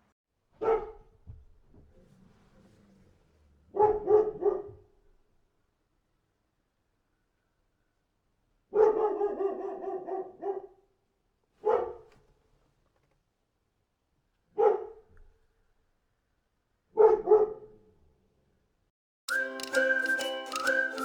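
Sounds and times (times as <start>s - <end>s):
dog barking: 0.6s - 1.2s, 3.7s - 4.9s, 8.7s - 10.9s, 11.6s - 12.2s, 14.5s - 15.1s, 16.9s - 17.8s.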